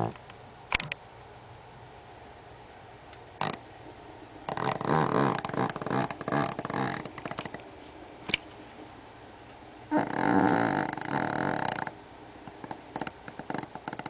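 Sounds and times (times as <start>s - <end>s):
dog snoring: 3.4s - 3.6s, 4.5s - 7.6s, 9.9s - 14.0s.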